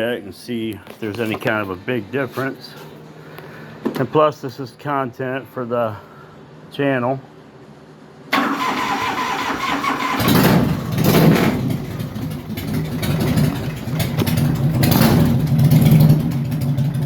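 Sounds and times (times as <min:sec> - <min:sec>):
motorcycle starter cranking: 0:08.3 - 0:17.0
motorcycle engine revving: 0:08.4 - 0:17.0.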